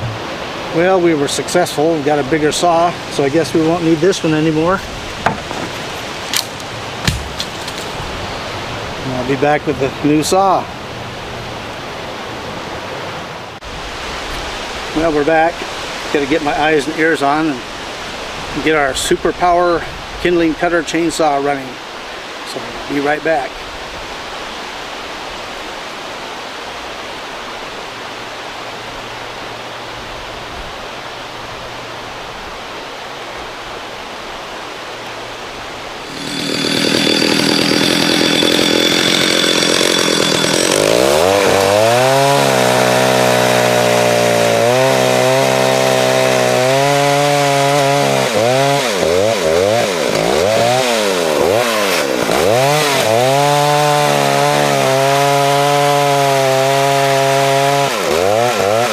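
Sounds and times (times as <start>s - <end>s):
chainsaw cutting logs: 3.2s - 8.0s, 36.0s - 58.9s.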